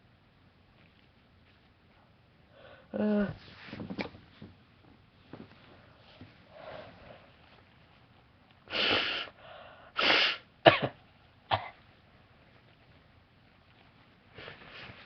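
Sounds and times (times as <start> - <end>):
person sneezing: 8.7 - 9.4, 10.0 - 11.0
person coughing: 10.6 - 11.8.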